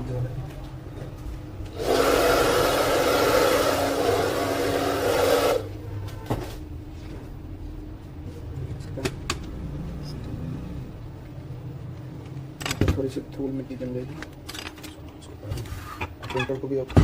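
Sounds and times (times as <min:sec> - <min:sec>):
hair dryer whooshing hum: 0:01.7 - 0:05.7.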